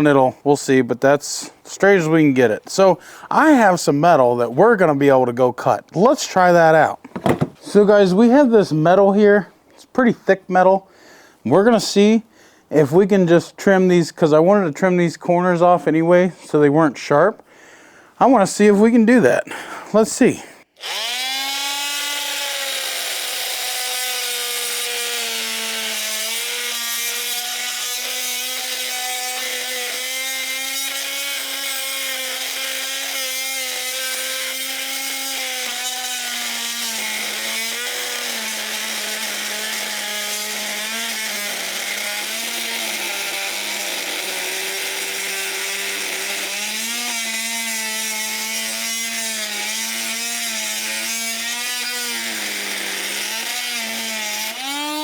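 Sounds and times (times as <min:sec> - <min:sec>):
multi-tool buzzing cutting steel: 0:20.8 - 0:55.0.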